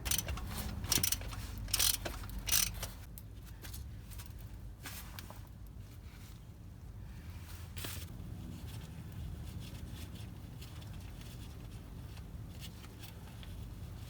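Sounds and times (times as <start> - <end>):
small clicks and scrapes: 0.0 - 4.4.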